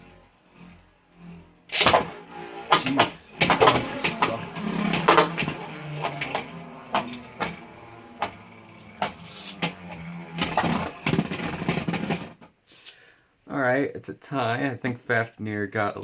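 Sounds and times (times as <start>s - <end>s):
spinning tops whirring hum: 0.0s - 12.5s
spinning tops clacking: 1.7s - 12.5s.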